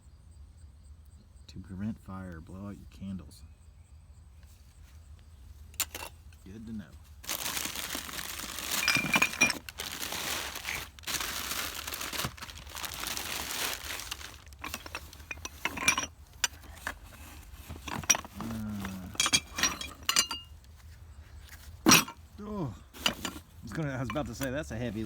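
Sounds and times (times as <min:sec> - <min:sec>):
rustling through junk: 0:05.5 - 0:25.0
metal and glass clinking: 0:05.8 - 0:06.1, 0:07.3 - 0:11.2, 0:12.0 - 0:17.0, 0:17.7 - 0:20.6, 0:21.8 - 0:22.2, 0:23.0 - 0:23.4, 0:24.0 - 0:24.5.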